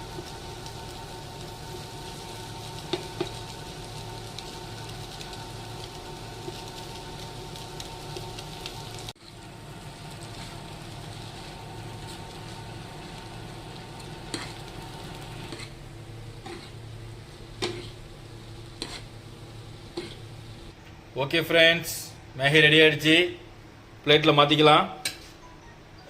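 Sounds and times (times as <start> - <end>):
noodles sizzling in a pan: 0.0 - 20.8
spatula stirring: 0.1 - 16.9, 17.5 - 19.2, 19.8 - 20.4.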